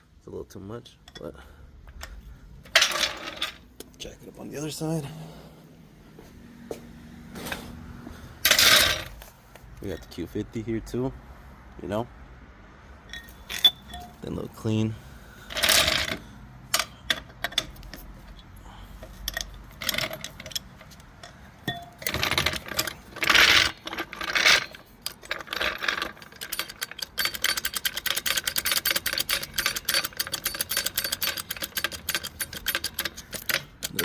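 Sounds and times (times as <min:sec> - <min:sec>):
car jack metal clanks and scrapes: 0:08.4 - 0:09.3, 0:13.0 - 0:14.3, 0:15.4 - 0:34.0
car jack ratcheting clicks: 0:19.0 - 0:34.0.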